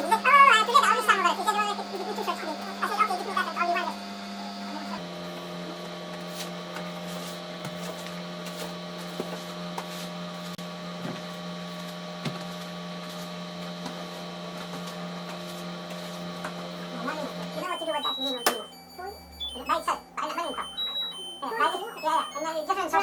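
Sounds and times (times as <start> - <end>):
washing machine motor hum: 0.0 - 23.0.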